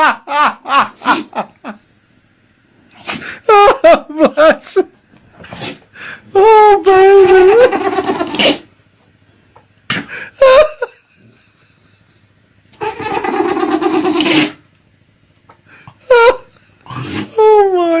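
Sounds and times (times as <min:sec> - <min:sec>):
laughter: 0:00.0 - 0:01.9, 0:03.3 - 0:05.3, 0:10.1 - 0:14.2, 0:16.0 - 0:16.6
dog sneezing: 0:03.0 - 0:03.4, 0:05.4 - 0:05.9, 0:08.1 - 0:08.7, 0:14.0 - 0:14.6.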